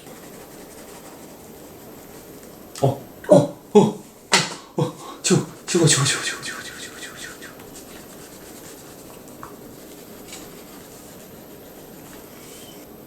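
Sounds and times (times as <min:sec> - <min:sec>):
pencil scratching on paper: 0:00.0 - 0:02.3, 0:05.7 - 0:12.9.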